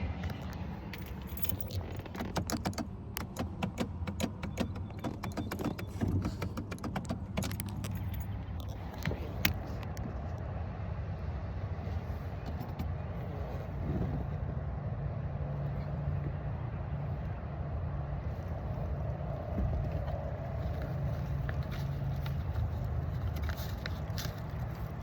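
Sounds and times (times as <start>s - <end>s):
metallic clicking and rattling: 0.2s - 10.0s.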